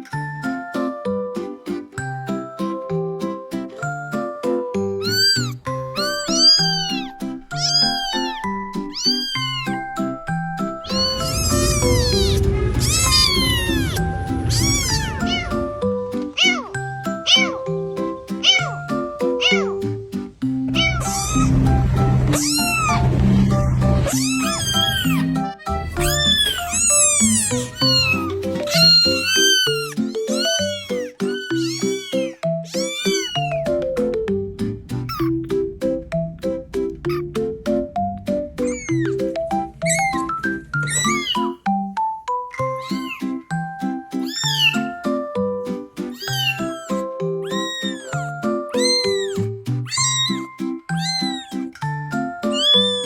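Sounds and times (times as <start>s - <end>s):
background music: 0.0s - 53.0s
kitten meowing: 5.0s - 10.1s, 10.8s - 20.0s, 20.7s - 34.1s, 35.1s - 35.4s, 38.5s - 41.6s, 42.6s - 43.4s, 44.2s - 45.0s, 46.0s - 53.0s.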